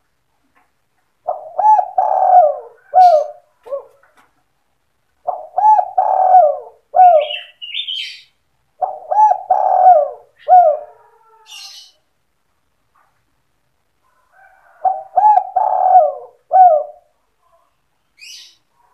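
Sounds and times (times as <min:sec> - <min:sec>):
dove cooing: 0:01.2 - 0:04.2, 0:05.2 - 0:08.1, 0:08.8 - 0:12.0, 0:14.4 - 0:18.9
high bird chirp: 0:07.2 - 0:08.3, 0:18.2 - 0:18.6.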